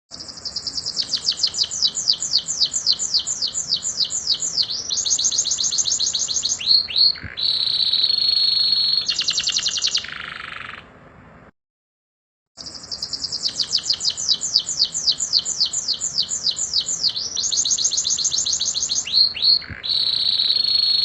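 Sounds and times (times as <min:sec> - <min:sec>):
canary singing: 0:00.1 - 0:11.0, 0:12.6 - 0:21.0.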